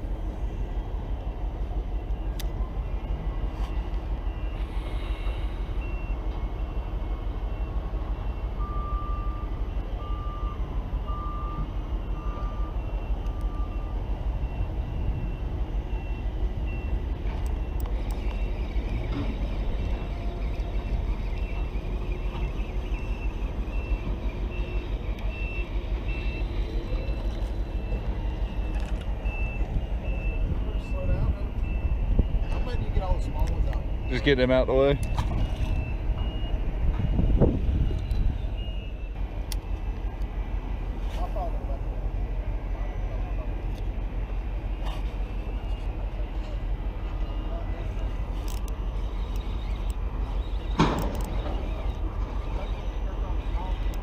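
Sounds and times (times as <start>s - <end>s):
short electronic beeps: 2.0s - 40.0s, 44.3s - 54.0s
low rumble with flutter: 34.9s - 54.0s.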